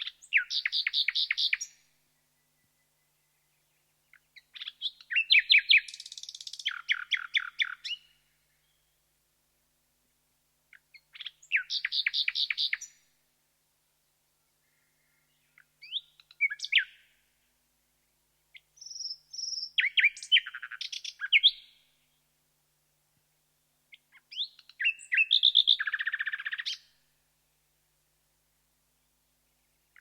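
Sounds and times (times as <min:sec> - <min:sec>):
nightingale singing: 0:00.0 - 0:09.0, 0:10.7 - 0:13.1, 0:14.5 - 0:17.2, 0:18.5 - 0:22.2, 0:23.9 - 0:27.0, 0:29.0 - 0:30.0.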